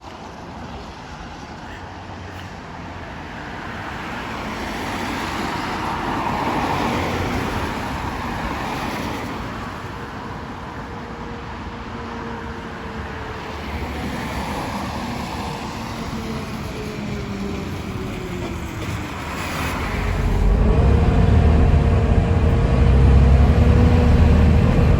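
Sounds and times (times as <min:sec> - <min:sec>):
bus engine running under load: 0:01.5 - 0:24.9
hoover-like whine: 0:19.5 - 0:24.9.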